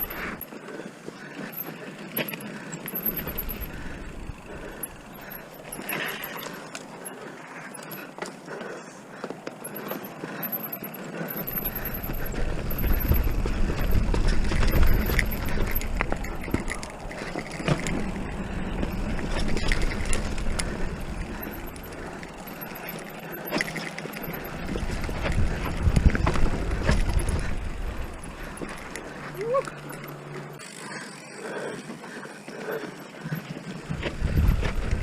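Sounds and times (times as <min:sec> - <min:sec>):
bike knocking and rattling: 0:00.0 - 0:35.0
tyres rolling on dirt and stones: 0:00.0 - 0:35.0
wind rumbling on microphone: 0:11.4 - 0:22.5, 0:23.9 - 0:29.1, 0:33.8 - 0:35.0.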